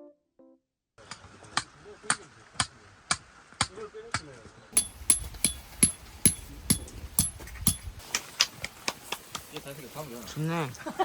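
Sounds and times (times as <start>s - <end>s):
sharp knocks: 4.8s - 8.0s.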